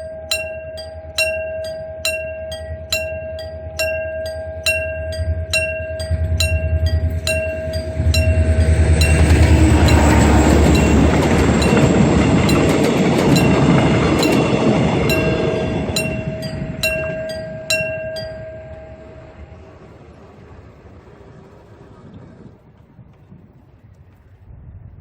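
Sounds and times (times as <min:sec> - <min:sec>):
mechanical level-crossing bell: 0:00.0 - 0:19.6
diesel train engine throb: 0:00.0 - 0:23.0
passing train rumble: 0:00.0 - 0:25.0.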